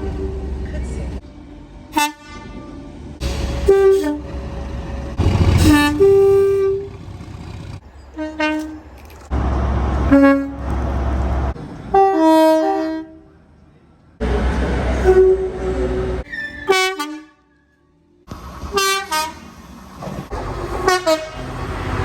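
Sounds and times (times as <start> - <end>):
low rumble of trains: 0.0 - 22.0
train horn blasts: 1.9 - 4.5, 5.6 - 7.0, 8.1 - 8.8, 11.9 - 13.3, 14.9 - 17.6, 18.7 - 19.5, 20.8 - 21.4.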